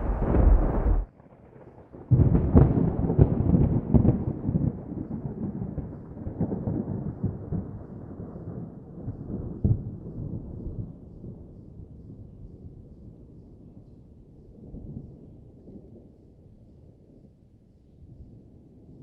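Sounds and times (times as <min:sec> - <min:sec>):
low thunder rumble: 0:00.0 - 0:01.1, 0:01.8 - 0:10.8
thunder cracks: 0:00.0 - 0:01.1.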